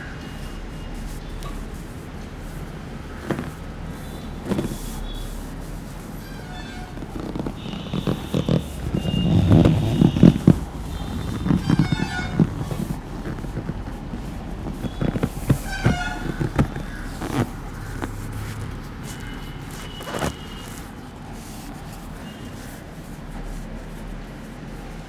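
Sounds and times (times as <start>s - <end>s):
street traffic noise: 0.0s - 25.0s
vehicle horns honking: 6.3s - 17.4s.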